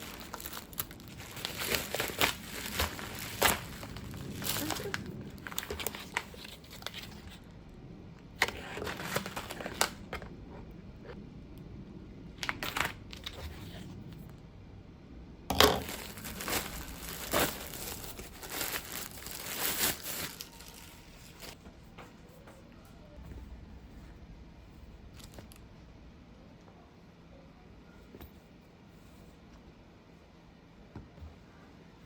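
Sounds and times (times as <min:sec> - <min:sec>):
crinkling and rustling: 0:00.0 - 0:07.6, 0:08.2 - 0:11.2, 0:15.5 - 0:24.2, 0:24.8 - 0:25.7.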